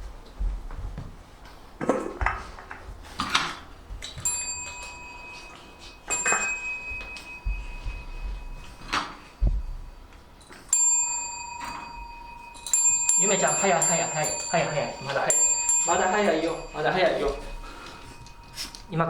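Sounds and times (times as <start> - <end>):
handbell ringing: 4.1 - 19.0.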